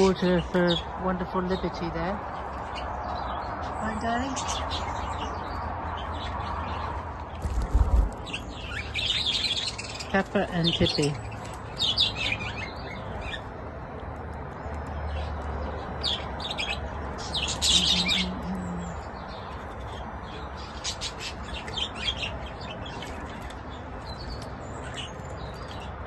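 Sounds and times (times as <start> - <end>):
budgerigars chirping: 7.7 - 13.6, 15.9 - 26.0.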